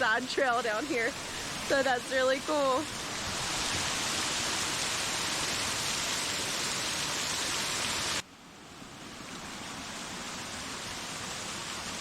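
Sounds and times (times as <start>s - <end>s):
waterfall roaring: 0.0s - 8.2s.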